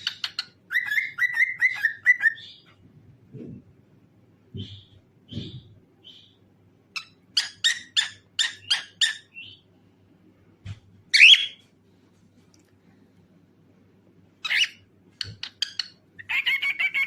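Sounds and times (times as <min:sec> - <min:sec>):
cockatiel chirping: 0:00.0 - 0:02.7, 0:07.0 - 0:09.6, 0:11.1 - 0:11.6, 0:14.4 - 0:17.0.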